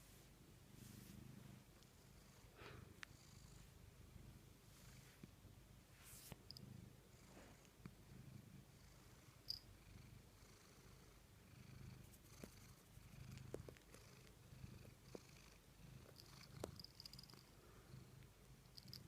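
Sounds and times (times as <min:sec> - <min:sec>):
cat purring: 0:06.5 - 0:19.0.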